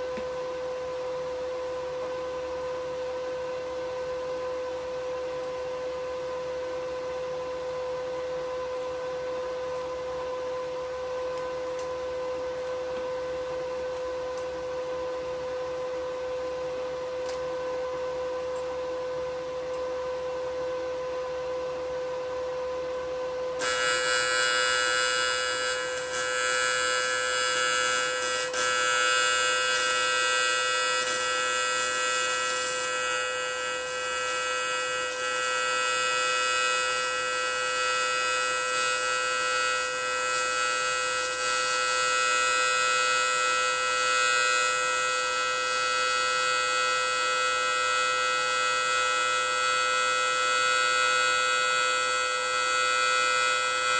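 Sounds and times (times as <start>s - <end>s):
electrical hum: 23.6s - 53.9s
welding arc buzzing: 23.6s - 53.9s.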